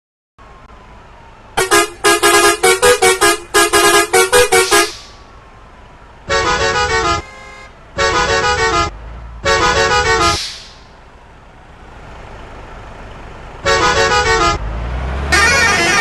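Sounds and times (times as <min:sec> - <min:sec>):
multi-tone bus horn: 0:01.6 - 0:05.2, 0:06.2 - 0:10.5, 0:13.6 - 0:16.0.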